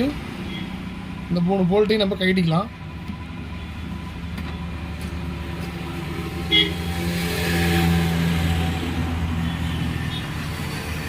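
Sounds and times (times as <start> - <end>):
low mechanical hum: 0.2 - 9.2.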